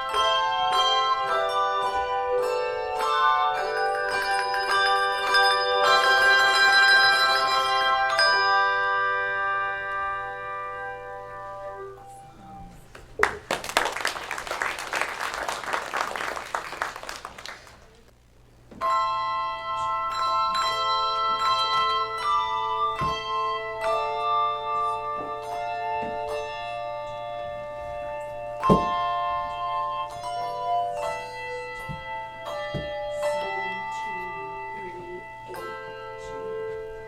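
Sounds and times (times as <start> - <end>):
handbell choir ringing: 0.0 - 10.4.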